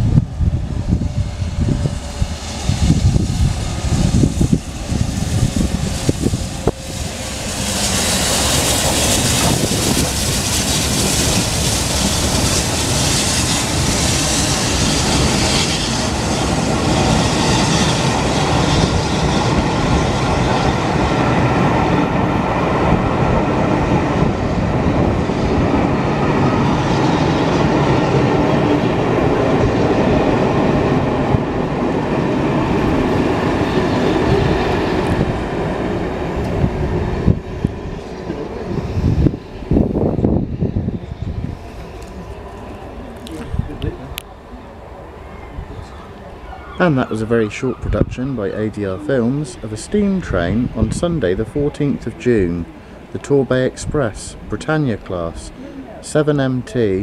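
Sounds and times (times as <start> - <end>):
train wheels rushing on rails: 0.0 - 57.0
steam hiss: 4.0 - 16.4.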